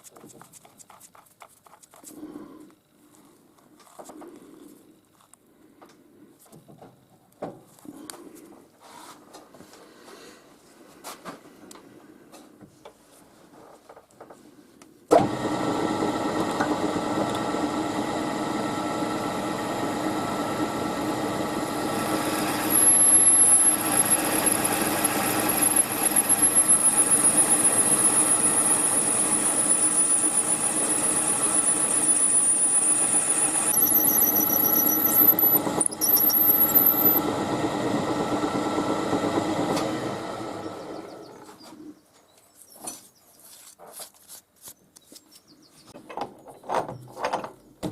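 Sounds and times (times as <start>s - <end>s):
machine tool spindle running: 15.2s - 41.4s
high-pitched cutter squeal: 21.5s - 37.2s.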